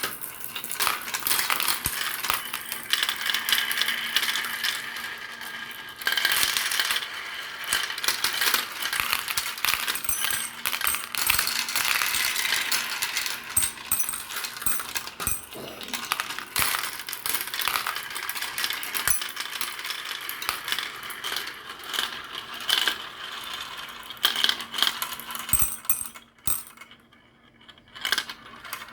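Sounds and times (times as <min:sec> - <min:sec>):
glass marbles rolling and clattering: 0:06.1 - 0:22.1, 0:25.3 - 0:26.8.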